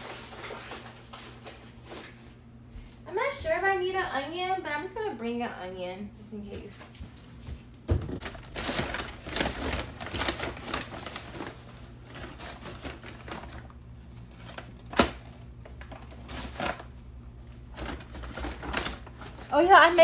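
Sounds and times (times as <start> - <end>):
kitchen items clattering: 7.9 - 20.0.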